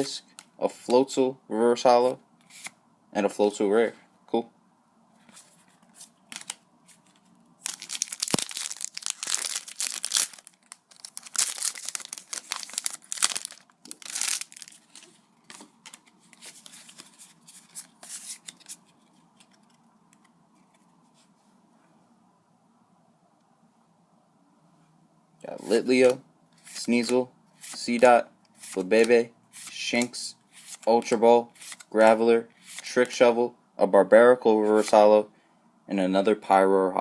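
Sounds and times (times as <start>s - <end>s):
foil wrapper tearing and crinkling: 7.6s - 15.0s.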